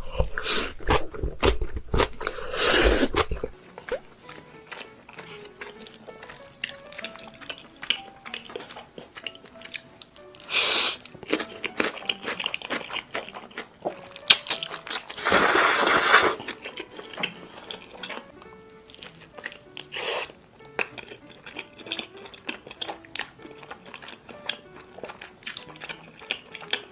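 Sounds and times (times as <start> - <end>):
noodle slurps: 0.0 - 4.1, 10.4 - 11.5, 14.6 - 18.2, 19.0 - 20.4
chewing and crunching: 0.0 - 26.9
soft background music: 0.0 - 26.9.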